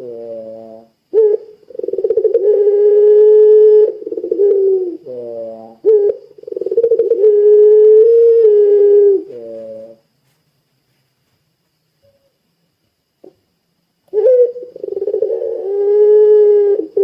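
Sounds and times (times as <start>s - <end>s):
dove calling: 0.0s - 10.0s, 14.1s - 17.0s.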